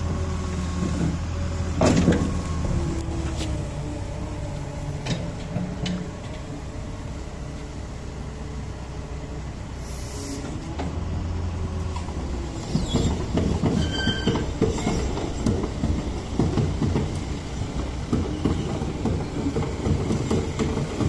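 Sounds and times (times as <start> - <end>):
metallic clanking and squealing: 12.6 - 15.4.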